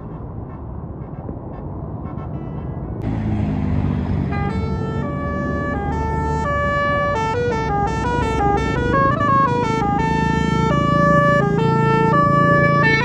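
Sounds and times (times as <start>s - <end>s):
bus engine rumble: 0.0s - 13.0s
bus horn playing a melody: 2.0s - 3.2s, 4.0s - 13.0s.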